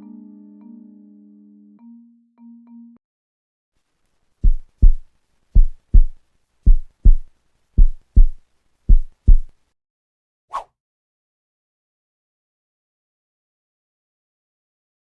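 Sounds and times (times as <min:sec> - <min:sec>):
heartbeat thumps: 0:04.4 - 0:09.5.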